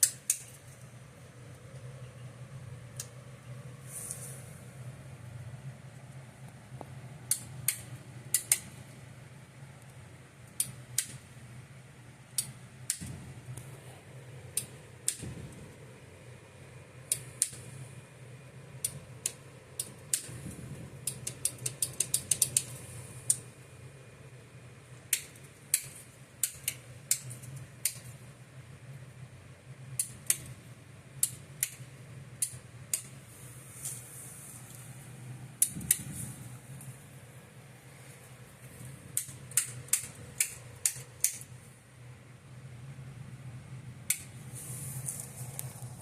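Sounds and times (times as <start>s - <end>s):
switches and buttons clicking: 0.0s - 0.7s, 2.9s - 4.3s, 6.4s - 9.0s, 9.8s - 11.3s, 12.3s - 13.7s, 14.5s - 15.8s, 17.1s - 17.7s, 18.8s - 23.5s, 25.0s - 28.2s, 29.9s - 33.2s, 35.6s - 36.3s, 38.7s - 41.6s, 44.0s - 44.4s
steady low hum: 0.0s - 46.0s.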